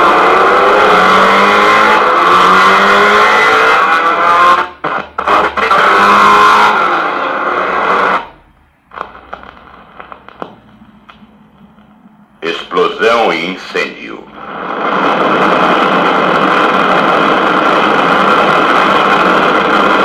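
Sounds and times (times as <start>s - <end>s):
motorcycle engine revving: 0.0s - 4.7s, 5.6s - 8.3s.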